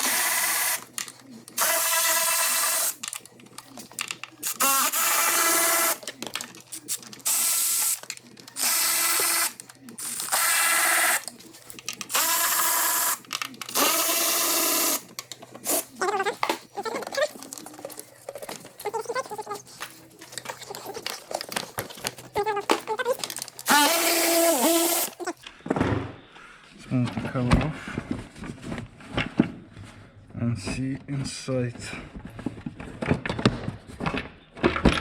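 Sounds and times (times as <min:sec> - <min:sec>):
power drill whining: 0:00.0 - 0:00.9, 0:01.6 - 0:03.0, 0:04.4 - 0:06.0, 0:08.6 - 0:11.3, 0:12.1 - 0:15.9, 0:22.6 - 0:25.2.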